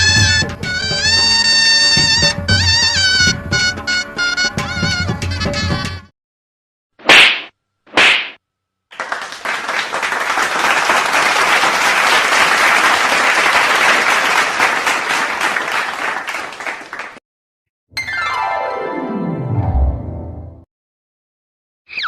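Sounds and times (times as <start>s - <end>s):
sharp swishes: 7.0s - 8.4s
clapping applause: 8.9s - 17.2s.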